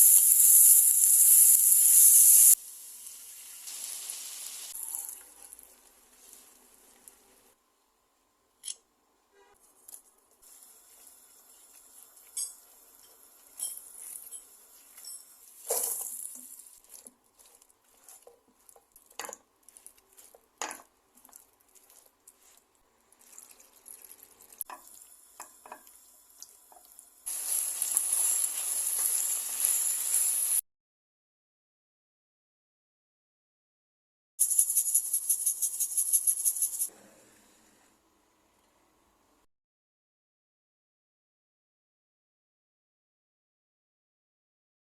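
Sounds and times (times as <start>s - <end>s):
food sizzling in a frying pan: 0.0s - 7.5s, 10.4s - 30.6s
utensils clinking against pans: 12.2s - 16.5s.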